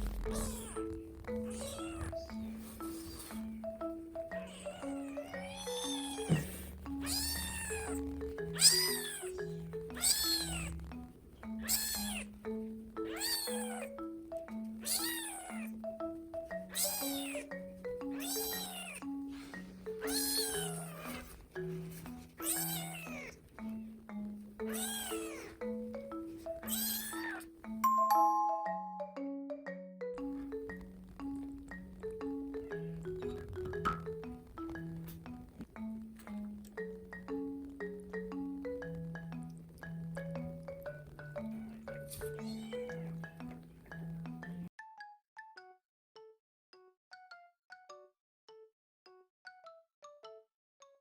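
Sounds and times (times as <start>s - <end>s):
kitten mewing: 0.0s - 2.4s, 4.4s - 8.0s, 8.6s - 9.3s, 9.9s - 10.8s, 11.6s - 12.3s, 13.1s - 13.9s, 14.8s - 15.7s, 16.7s - 17.5s, 18.1s - 19.1s, 20.0s - 21.4s, 22.4s - 23.4s, 24.7s - 25.6s, 26.6s - 27.4s, 41.6s - 43.2s
marimba-style music: 0.0s - 45.6s.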